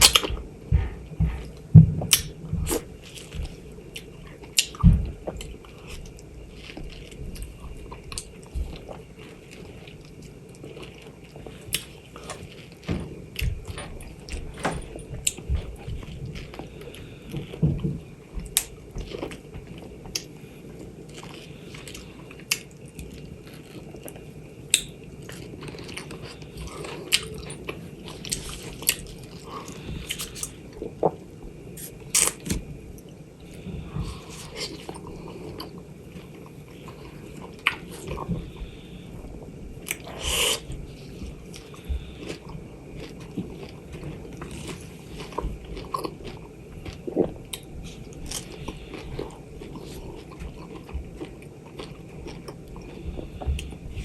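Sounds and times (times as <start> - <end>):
biting and chewing fruit: 0.0 - 10.0, 21.1 - 33.1, 39.8 - 54.0
steady low hum: 0.0 - 54.0.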